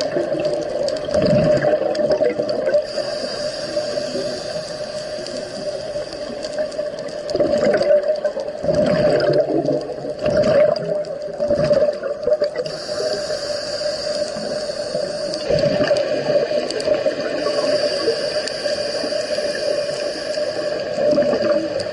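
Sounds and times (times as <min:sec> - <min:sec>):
diver's bubbles gurgling underwater: 0:00.0 - 0:03.2, 0:06.4 - 0:13.3, 0:14.4 - 0:18.2, 0:19.6 - 0:21.9.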